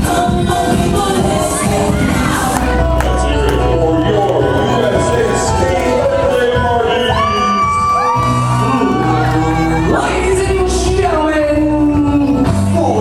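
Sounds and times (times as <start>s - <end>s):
loud music with singing: 0.0s - 13.0s
children shouting and whooping: 1.4s - 3.0s, 7.0s - 10.3s.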